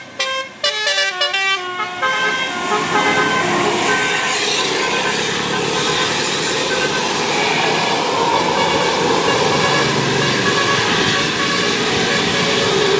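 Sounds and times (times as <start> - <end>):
heavy vehicle passing: 2.4 - 12.9.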